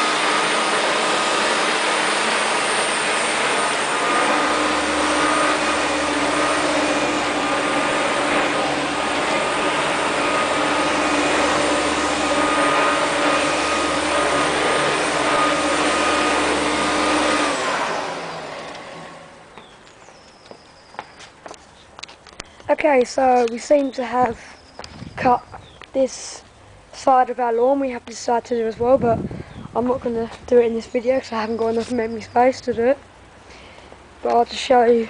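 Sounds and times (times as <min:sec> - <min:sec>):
electric mower motor humming: 0:00.0 - 0:19.7.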